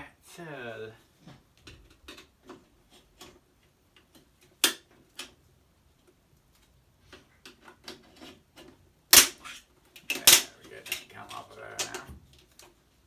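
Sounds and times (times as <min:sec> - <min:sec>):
sharp loud click: 0:09.2 - 0:09.4.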